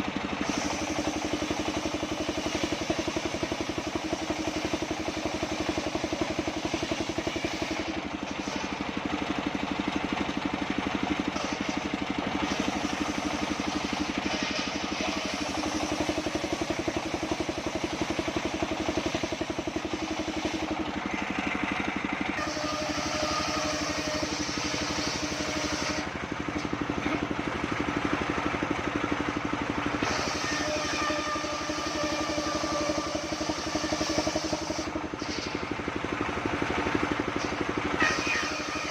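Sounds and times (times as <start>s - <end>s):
sawmill engine running: 0.0s - 38.9s
saw cutting hiss: 0.4s - 8.9s, 11.3s - 21.3s, 22.4s - 26.2s, 30.0s - 35.7s, 37.4s - 38.9s.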